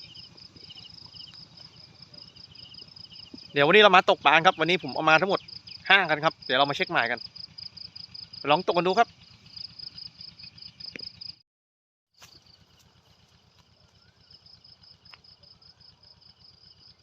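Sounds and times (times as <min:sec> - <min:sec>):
low pulsing hum: 0:00.0 - 0:06.5, 0:12.2 - 0:17.0
insects trilling: 0:00.0 - 0:11.4, 0:12.2 - 0:17.0.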